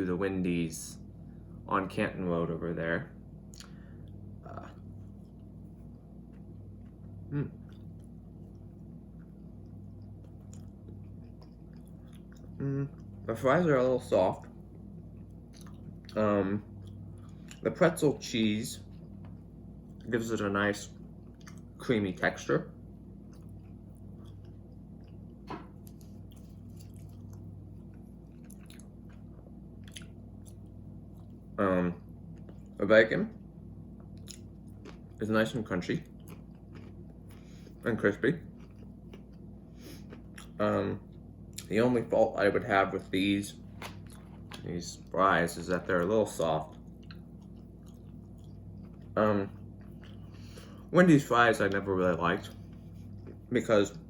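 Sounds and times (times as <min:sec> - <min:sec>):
steady low hum: 0:00.0 - 0:54.0
person chewing: 0:03.4 - 0:13.3, 0:14.4 - 0:17.6, 0:21.0 - 0:21.8, 0:23.1 - 0:32.8, 0:34.0 - 0:35.2, 0:36.0 - 0:37.8, 0:38.4 - 0:41.7, 0:43.0 - 0:45.1, 0:45.8 - 0:50.9, 0:52.4 - 0:53.5
person humming: 0:12.6 - 0:12.9.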